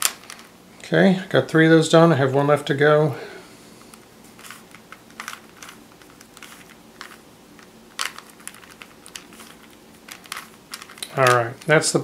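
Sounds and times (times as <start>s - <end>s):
puzzle cube plastic clicks: 0.0s - 0.5s, 3.9s - 11.8s.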